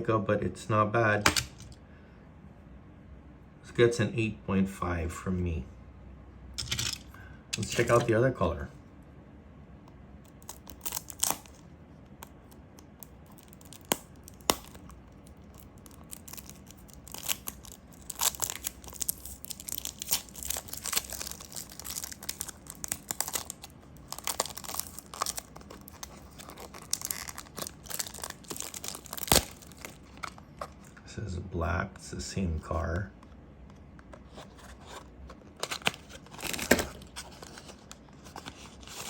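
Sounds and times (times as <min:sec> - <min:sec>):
packaging crinkling and tearing: 0:10.2 - 0:30.8, 0:34.6 - 0:39.0.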